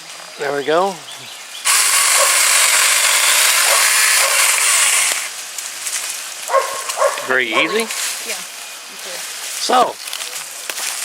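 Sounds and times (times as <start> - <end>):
electric chainsaw cutting wood: 1.6 - 8.4.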